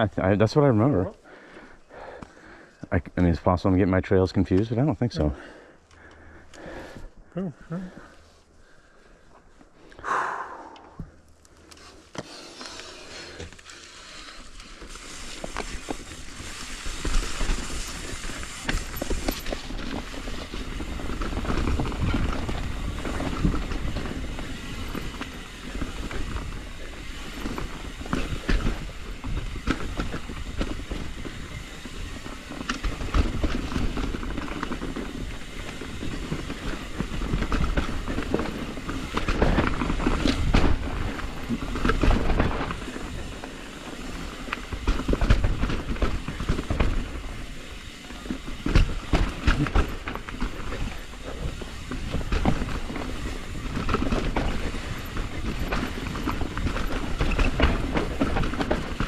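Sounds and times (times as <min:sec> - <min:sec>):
bike rattling: 0:00.0 - 0:09.9, 0:11.0 - 0:59.0
tyres rumbling over dirt: 0:13.0 - 0:59.0
knocks and clatter from bumps: 0:48.3 - 0:59.0.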